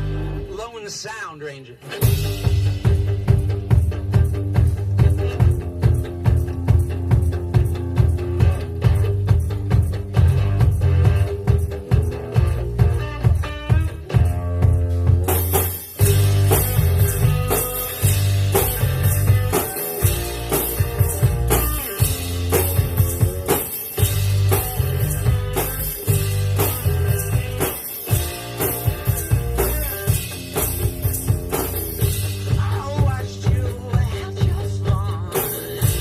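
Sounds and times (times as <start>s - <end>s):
driving drum beat: 0.0s - 36.0s
rock music guitar and bass: 0.0s - 36.0s.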